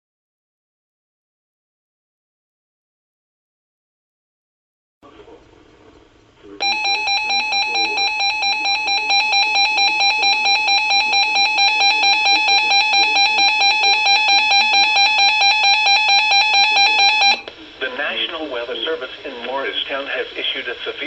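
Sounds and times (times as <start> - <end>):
faint radio hiss: 5.0 - 21.0
pulsing electronic alarm tone: 6.6 - 17.5.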